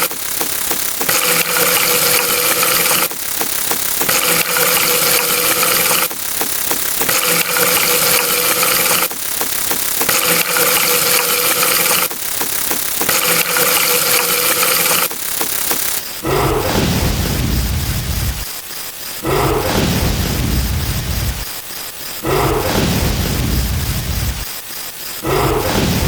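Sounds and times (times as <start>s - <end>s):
deep roaring rush of fire: 16.2s - 18.4s, 19.2s - 21.4s, 22.2s - 24.4s.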